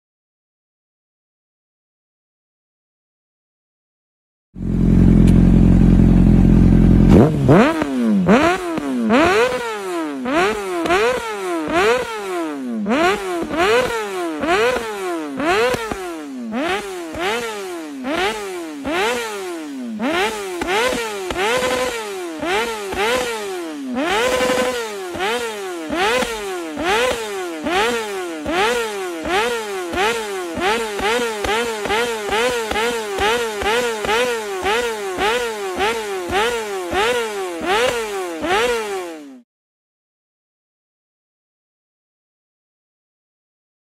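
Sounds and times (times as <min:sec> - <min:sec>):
motorcycle engine revving: 0:04.6 - 0:39.4
exhaust pops and crackles: 0:28.4 - 0:38.0.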